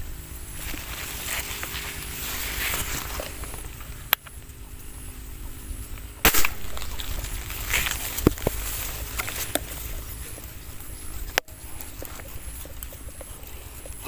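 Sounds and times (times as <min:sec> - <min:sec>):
air gun shot: 0:06.2 - 0:07.0.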